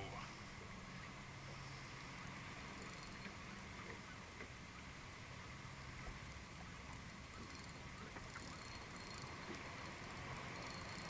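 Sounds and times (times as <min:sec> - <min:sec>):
faint wash of water: 0:00.0 - 0:11.0
small ticks and clicks: 0:06.9 - 0:11.0.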